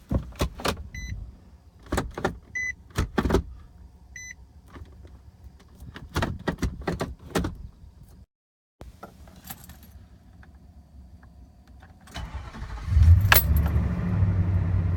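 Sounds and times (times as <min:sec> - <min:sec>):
pickup engine starting: 0:12.1 - 0:14.9
keys jangling: 0:13.2 - 0:13.7.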